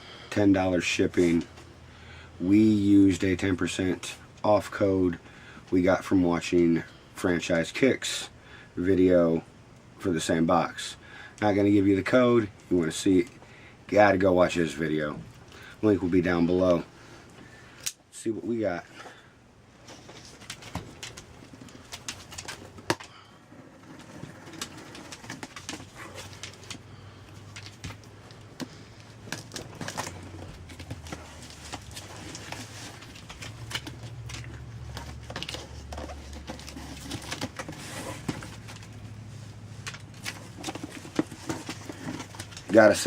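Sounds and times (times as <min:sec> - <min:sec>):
low steady hum: 0:00.0 - 0:43.0
cardboard box being unpacked: 0:28.6 - 0:39.0, 0:39.8 - 0:43.0.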